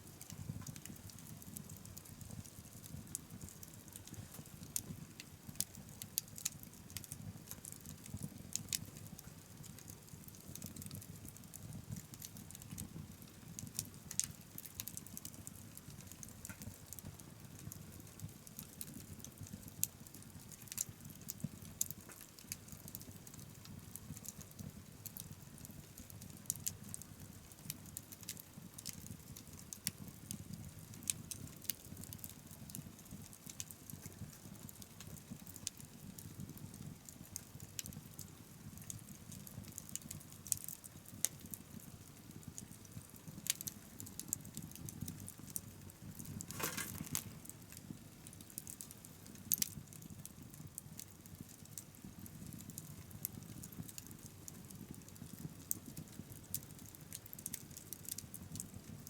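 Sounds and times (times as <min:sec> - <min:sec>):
wood fire popping and snapping: 0:00.0 - 0:59.0
low rush of flames: 0:46.0 - 0:48.5.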